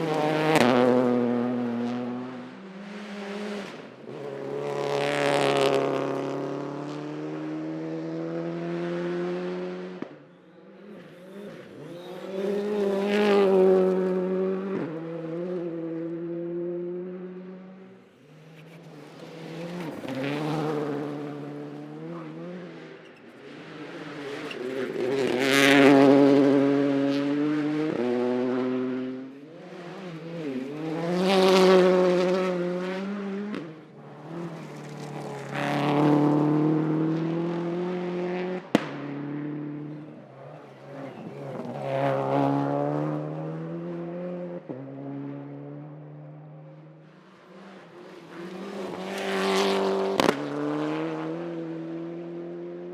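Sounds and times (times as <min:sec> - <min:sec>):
rally car engines at full throttle: 0:00.0 - 0:52.9.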